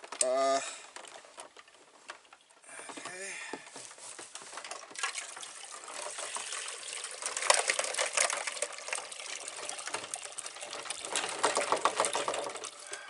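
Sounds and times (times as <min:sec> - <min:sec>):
ice cubes clinking in water: 0:04.6 - 0:13.0.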